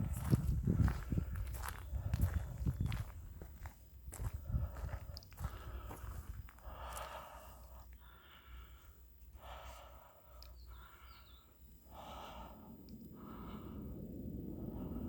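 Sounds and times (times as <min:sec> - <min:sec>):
person breathing heavily: 0:04.1 - 0:15.0.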